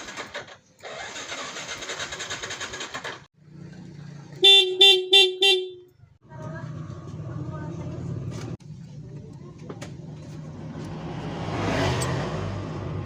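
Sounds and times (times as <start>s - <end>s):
motorcycle electric starter cranking: 0.0s - 3.3s
horn beeps: 4.4s - 5.9s.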